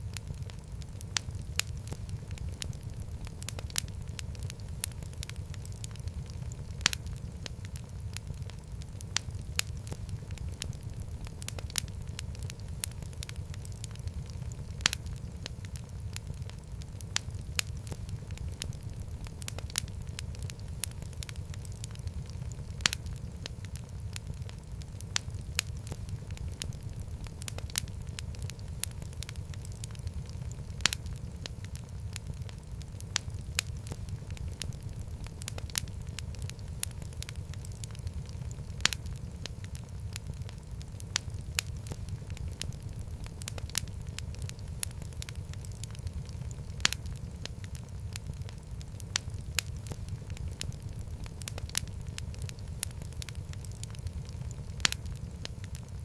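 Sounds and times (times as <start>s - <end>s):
fire pops and snaps: 0.0s - 56.0s
low rumble of flames: 0.0s - 56.0s.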